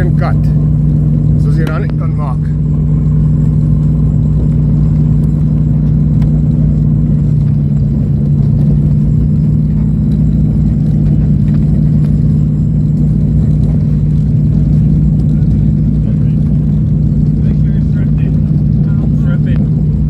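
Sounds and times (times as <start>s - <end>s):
propeller engine droning in cabin: 0.0s - 20.0s.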